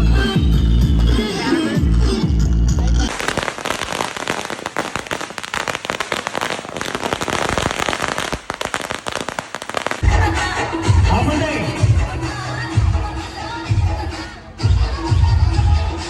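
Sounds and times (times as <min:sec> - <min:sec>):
firecrackers crackling: 0:03.1 - 0:10.6.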